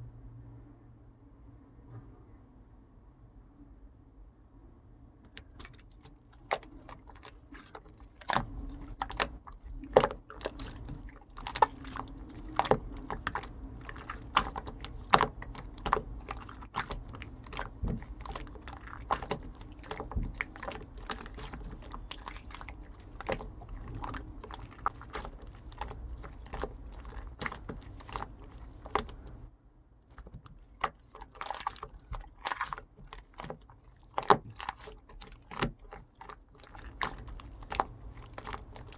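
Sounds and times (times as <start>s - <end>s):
slime squishing with sticky clicks: 5.3s - 29.5s, 30.1s - 38.9s.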